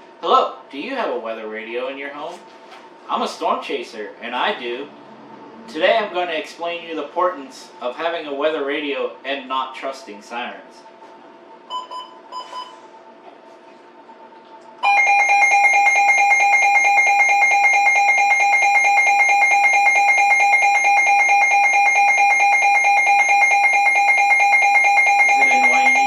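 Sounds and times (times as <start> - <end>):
shrill pulsing electronic alarm: 14.8 - 26.0
short electronic beeps: 25.1 - 26.0.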